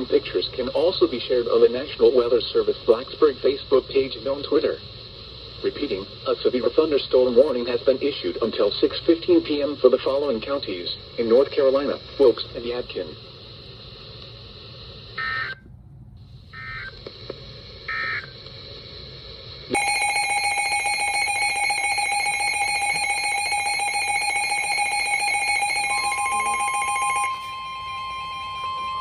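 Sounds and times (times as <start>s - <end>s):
background hiss: 0.0s - 19.8s
digital data tone bursts: 19.8s - 29.0s
steady alert tone: 19.8s - 29.0s.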